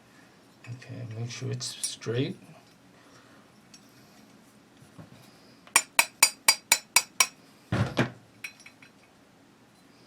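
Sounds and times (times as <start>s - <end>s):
small hammer tapping metal punch: 5.8s - 7.4s.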